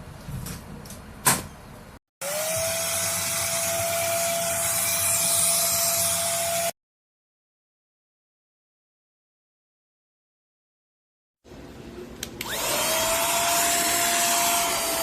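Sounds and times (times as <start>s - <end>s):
handheld vacuum motor whining: 2.2s - 6.7s, 12.4s - 15.0s.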